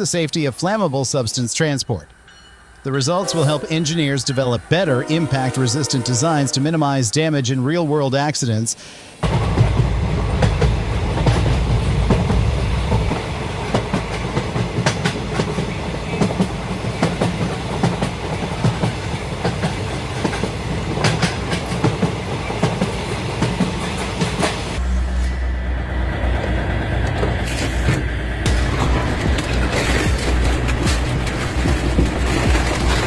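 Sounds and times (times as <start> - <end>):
train rumble: 1.9 - 7.2, 9.2 - 33.0
train wheels clattering: 9.2 - 24.8, 26.4 - 33.0.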